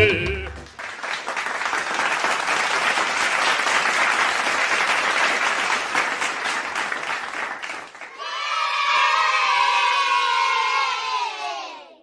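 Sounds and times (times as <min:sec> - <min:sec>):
crowd applauding: 0:00.0 - 0:08.3
crowd cheering: 0:00.0 - 0:12.0.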